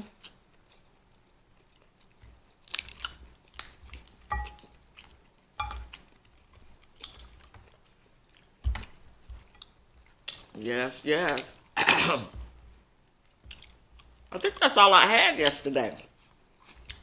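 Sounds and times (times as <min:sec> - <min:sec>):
person chewing crunchy food: 0:00.1 - 0:10.6, 0:13.2 - 0:14.4.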